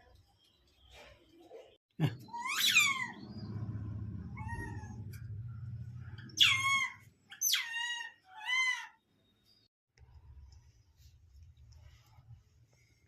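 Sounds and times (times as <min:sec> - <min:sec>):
low steady rumble: 0:02.9 - 0:06.8.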